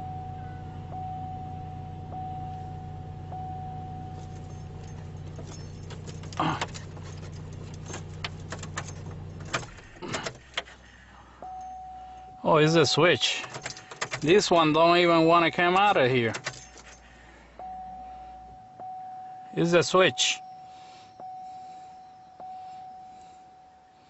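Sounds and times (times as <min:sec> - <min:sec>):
car warning chime: 0:00.0 - 0:10.7, 0:11.3 - 0:24.0
steady low hum: 0:00.0 - 0:15.0
key rattling in ignition lock: 0:04.1 - 0:10.8, 0:12.8 - 0:17.2.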